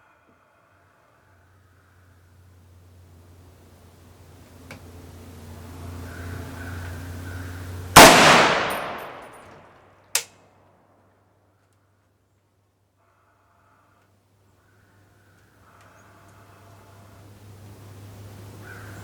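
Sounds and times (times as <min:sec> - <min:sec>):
rifle shot with echo: 0:08.0 - 0:09.7
sharp metallic clink: 0:08.0 - 0:10.3.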